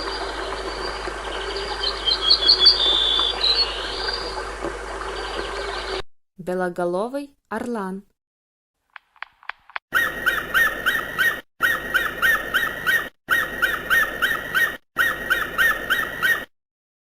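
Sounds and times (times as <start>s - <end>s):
eagle chittering whistles: 0.0s - 4.4s, 9.9s - 16.5s.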